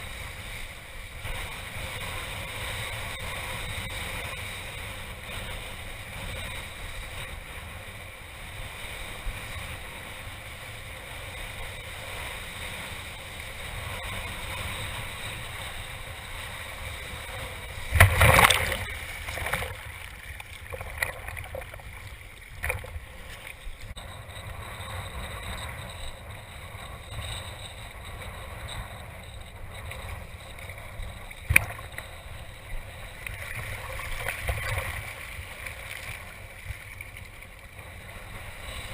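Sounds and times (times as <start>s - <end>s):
water rushing past board: 17.7s - 23.8s
loud splashing: 17.9s - 21.8s.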